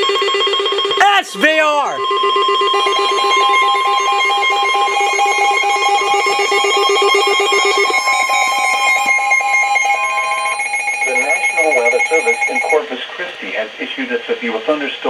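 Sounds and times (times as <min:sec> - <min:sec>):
steady high alert tone: 0:01.0 - 0:02.0.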